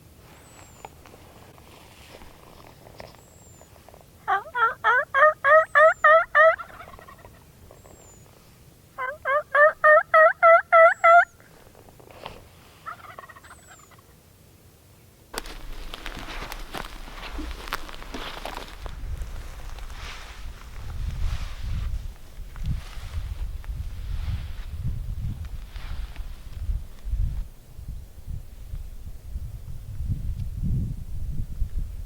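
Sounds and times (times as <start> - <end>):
rustling: 0.2 - 4.1, 15.4 - 24.8, 25.4 - 27.5
turkey calling: 4.3 - 7.4, 9.0 - 11.5, 12.8 - 14.1.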